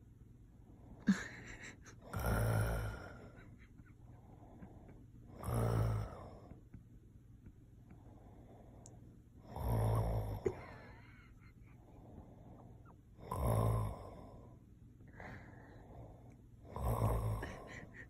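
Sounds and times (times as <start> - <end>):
man snoring loudly: 2.1 - 3.4, 5.4 - 6.5, 9.4 - 10.6, 13.2 - 14.4, 16.7 - 17.9.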